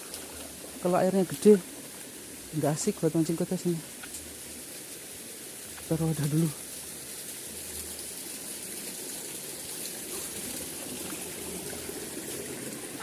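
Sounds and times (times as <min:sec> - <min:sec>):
stream trickling: 0:00.0 - 0:13.0.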